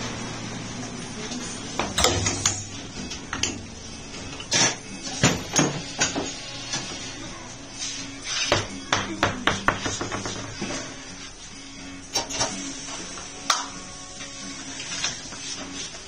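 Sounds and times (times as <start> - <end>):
steady low hum: 0.0 - 8.2
metallic clanks of tools: 1.9 - 7.0.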